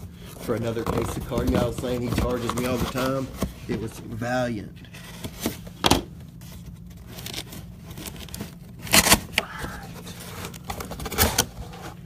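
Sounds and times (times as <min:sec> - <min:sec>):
packaging tearing and crinkling: 0:06.9 - 0:11.9.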